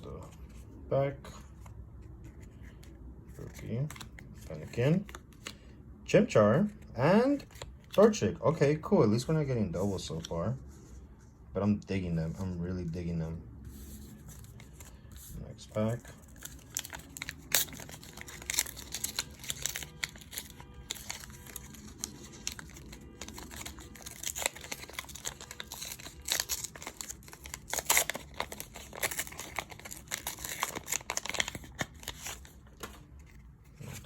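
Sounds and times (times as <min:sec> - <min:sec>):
wrapper tearing and crinkling: 0:16.2 - 0:34.0.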